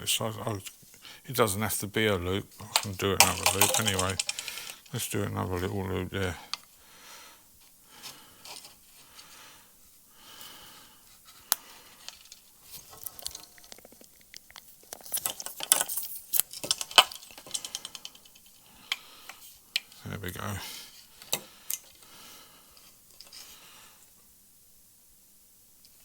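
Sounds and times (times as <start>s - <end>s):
small clicks and scrapes: 2.8s - 5.0s, 11.1s - 20.0s, 22.8s - 23.6s
soft rustles: 7.6s - 18.7s.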